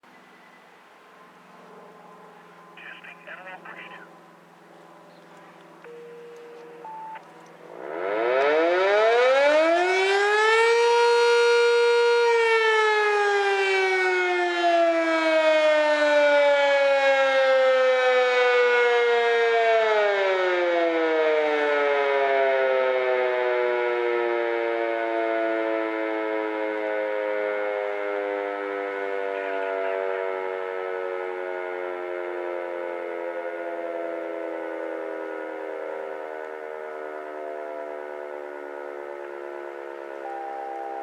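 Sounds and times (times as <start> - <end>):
radio scanner tones: 2.8 - 4.1, 5.4 - 7.3
warning siren winding up: 5.8 - 41.0.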